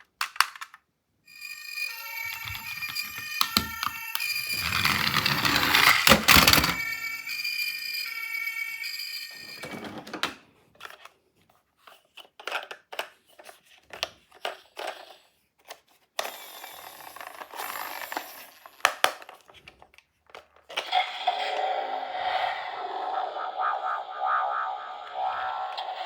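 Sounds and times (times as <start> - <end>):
toy cars clicking together: 0.0 - 0.9, 2.4 - 6.8, 12.1 - 21.0
toy electronic siren: 1.3 - 10.4, 16.2 - 19.3, 20.8 - 26.0
steady rushing noise: 21.6 - 26.0.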